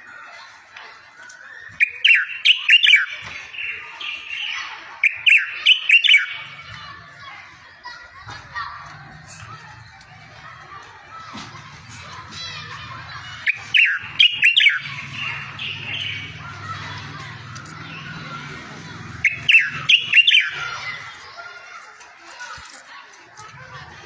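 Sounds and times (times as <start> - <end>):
songbird warbling: 12.5 - 18.4, 19.0 - 21.0.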